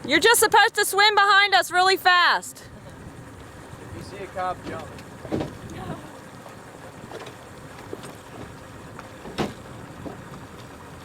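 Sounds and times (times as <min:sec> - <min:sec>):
motorboat engine: 0:00.0 - 0:11.0
short knocks: 0:07.1 - 0:10.3.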